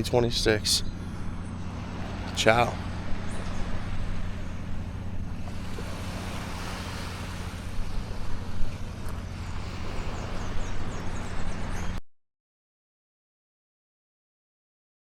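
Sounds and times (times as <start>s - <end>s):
boat engine droning: 0.0s - 12.0s
rush of wind and water: 0.0s - 12.0s.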